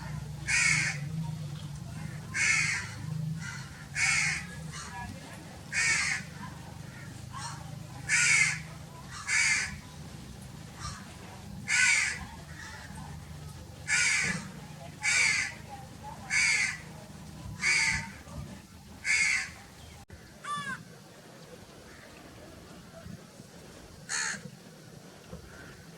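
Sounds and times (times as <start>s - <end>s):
crow cawing: 0.4s - 1.1s, 2.0s - 5.0s, 5.7s - 9.8s, 10.8s - 11.1s, 11.7s - 13.0s, 13.9s - 15.7s, 16.3s - 16.9s, 17.6s - 18.2s, 19.0s - 19.6s, 24.1s - 24.5s.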